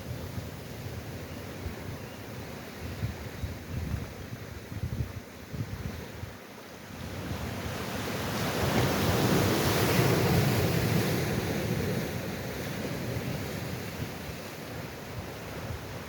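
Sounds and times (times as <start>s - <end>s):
sea surf wave washing: 7.4s - 16.0s.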